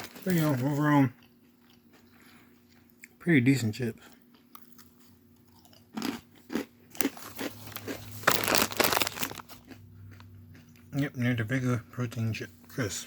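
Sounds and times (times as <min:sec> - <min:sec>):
person crunching crisps: 0:00.0 - 0:00.7, 0:04.5 - 0:10.9.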